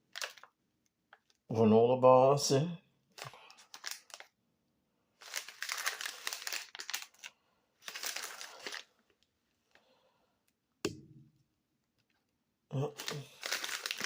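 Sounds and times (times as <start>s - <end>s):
plastic wrapper crinkling: 0.0s - 1.4s, 3.1s - 4.4s, 5.2s - 9.8s, 12.9s - 14.0s.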